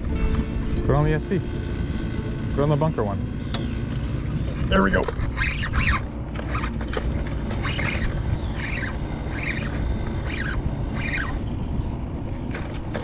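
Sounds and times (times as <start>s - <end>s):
low rumble: 0.0s - 13.0s
birds squawking: 2.3s - 12.7s.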